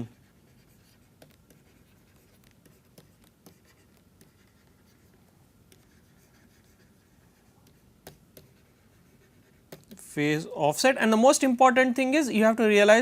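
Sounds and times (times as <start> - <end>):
pen scratching on paper: 0.1 - 9.9
pen tapping: 0.9 - 6.8, 7.4 - 8.8, 9.4 - 10.0.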